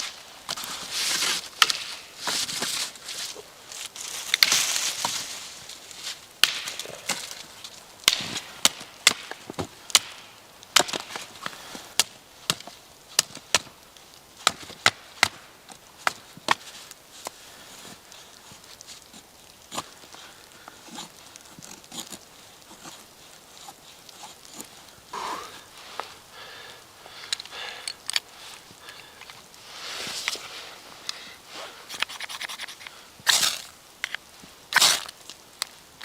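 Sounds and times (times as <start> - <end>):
rustling hiss: 0.0 - 36.0
wood being chopped: 6.4 - 7.4, 8.0 - 11.3, 14.4 - 15.4.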